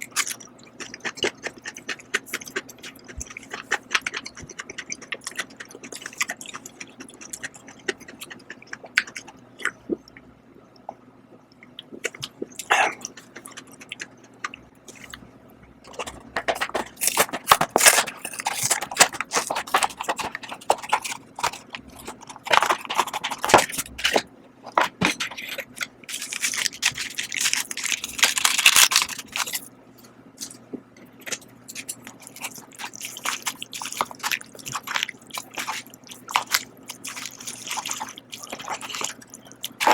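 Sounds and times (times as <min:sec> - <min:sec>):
chewing and mouth clicks: 0:00.0 - 0:15.2, 0:25.1 - 0:39.9.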